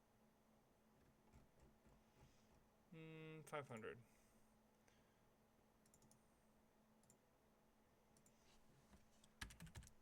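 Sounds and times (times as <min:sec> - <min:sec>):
faint computer mouse clicks: 0:05.8 - 0:06.2.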